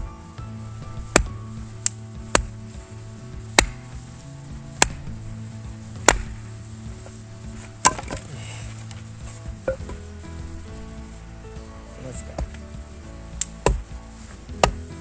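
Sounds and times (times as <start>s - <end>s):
background music: 0.0s - 15.0s
blade chopping firewood: 6.0s - 10.8s.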